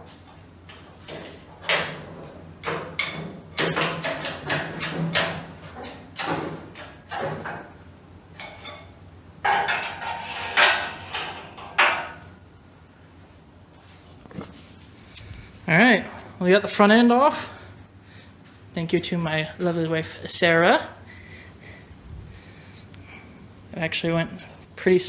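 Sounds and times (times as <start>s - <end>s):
faint steady hum: 0.0s - 25.0s
sheet metal clanking and scraping: 1.0s - 7.6s, 9.5s - 12.2s.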